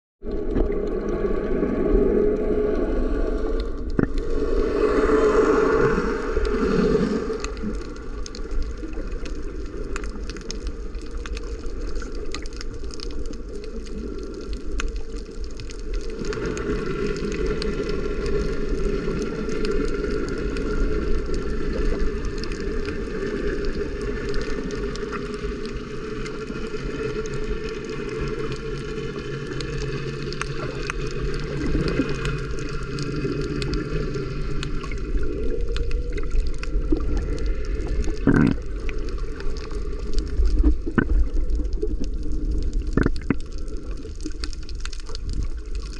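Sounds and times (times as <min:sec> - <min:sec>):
low rumble: 0:00.2 - 0:29.7
water sloshing and gurgling: 0:00.2 - 0:45.9.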